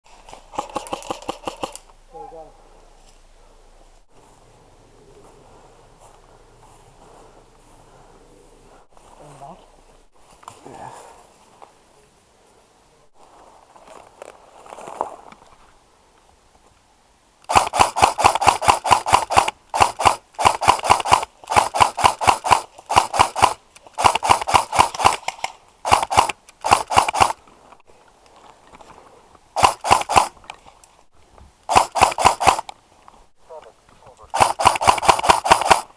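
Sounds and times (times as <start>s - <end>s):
airsoft rifle firing bursts: 0.4s - 1.8s, 17.5s - 27.4s, 29.6s - 30.4s, 31.7s - 32.7s, 34.3s - 35.9s.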